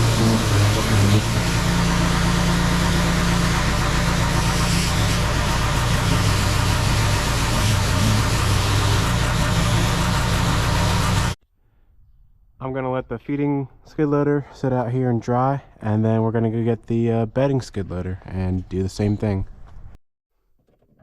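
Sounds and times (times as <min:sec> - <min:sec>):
pressure washer engine running: 0:00.0 - 0:11.4
water spray hissing: 0:00.0 - 0:11.4.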